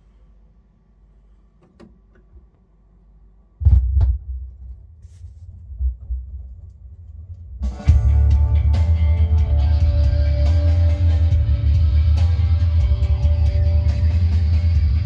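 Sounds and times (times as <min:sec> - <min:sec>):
faint hum: 0:00.0 - 0:15.0
throbbing bass rumble: 0:07.7 - 0:15.0
heavy low thumps: 0:07.8 - 0:15.0
rock band playing: 0:07.8 - 0:15.0.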